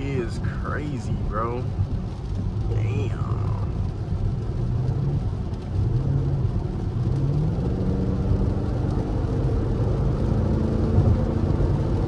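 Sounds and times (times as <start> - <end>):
car engine accelerating: 3.3 - 12.0.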